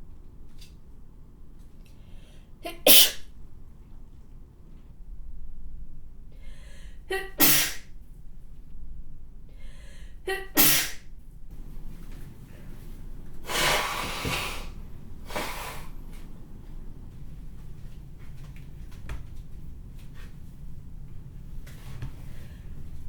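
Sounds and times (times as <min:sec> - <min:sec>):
woman sneezing: 0:02.6 - 0:03.3, 0:07.1 - 0:07.9, 0:10.3 - 0:11.0.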